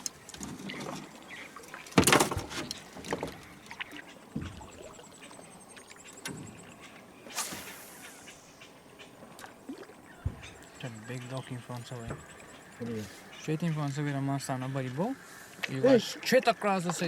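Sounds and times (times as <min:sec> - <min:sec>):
knocks and thuds on boat: 0:01.9 - 0:03.6, 0:04.3 - 0:04.8, 0:10.2 - 0:10.6, 0:12.0 - 0:12.3
short hiss: 0:07.3 - 0:08.7.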